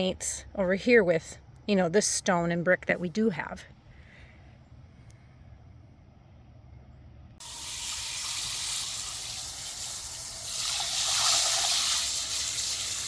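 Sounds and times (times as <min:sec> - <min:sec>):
water splashing into bird bath: 0:07.4 - 0:13.0.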